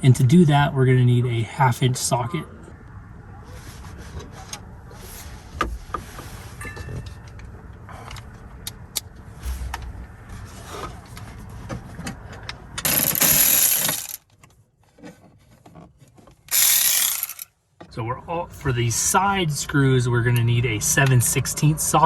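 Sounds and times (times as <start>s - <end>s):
metal tools clinking: 12.8s - 14.2s, 16.5s - 17.5s
socket ratchet clicking: 12.8s - 14.2s, 16.5s - 17.5s.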